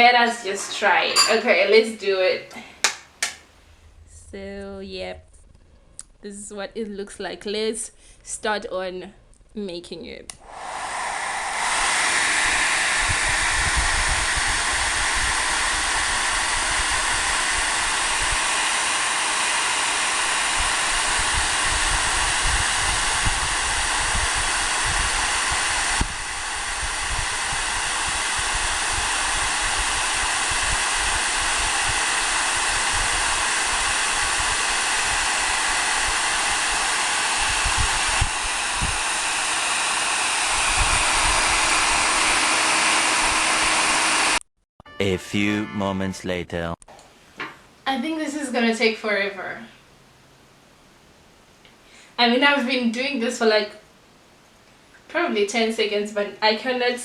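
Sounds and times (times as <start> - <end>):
hair dryer blowing: 0.0 - 3.5, 10.4 - 44.4.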